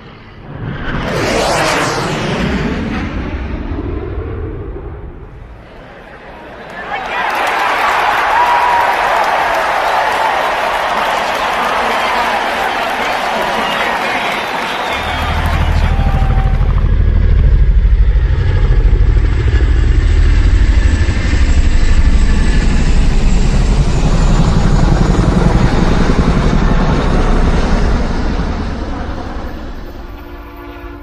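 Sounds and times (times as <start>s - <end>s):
vehicle engine rumbling: 15.0s - 21.3s.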